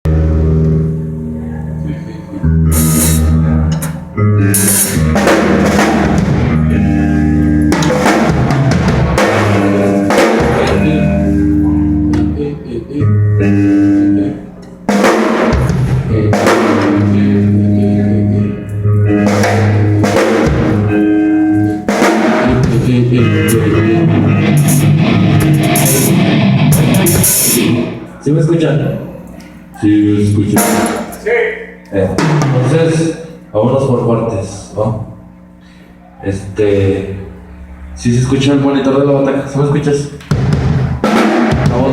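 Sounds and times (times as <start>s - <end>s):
heavy metal band playing: 0.0s - 33.5s, 37.1s - 41.9s
bass drum and snare: 4.6s - 6.6s, 7.6s - 10.9s, 14.9s - 17.2s, 19.1s - 21.0s, 24.5s - 27.6s, 32.2s - 32.7s, 40.2s - 41.9s.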